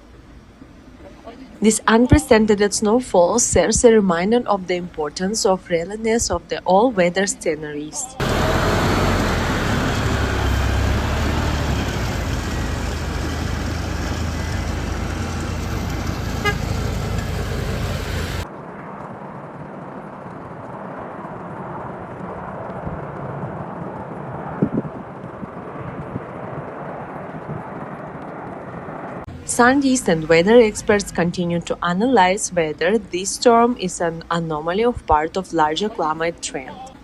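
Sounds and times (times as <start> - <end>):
street traffic rumble: 0.0 - 18.5, 29.1 - 37.0
car horn toot: 16.1 - 17.3.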